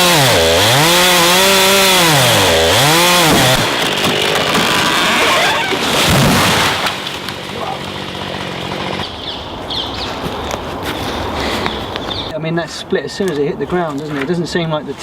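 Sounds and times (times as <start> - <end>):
chainsaw running at high revs: 0.0 - 6.0, 7.2 - 9.2
tree cracking and crashing: 0.0 - 9.2
tree thudding on ground: 3.0 - 7.6.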